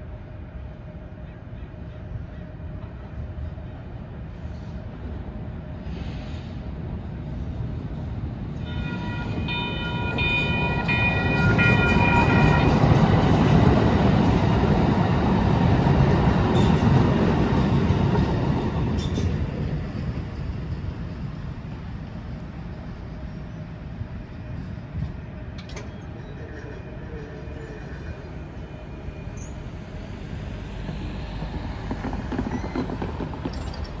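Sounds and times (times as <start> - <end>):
train rumbling past: 0.0 - 34.0
train horn chord: 8.6 - 12.8.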